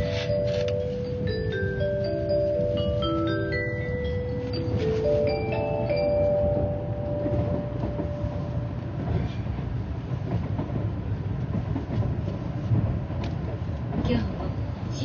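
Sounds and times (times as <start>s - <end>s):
onboard chime: 0.0s - 9.2s
train rumble: 0.0s - 15.0s.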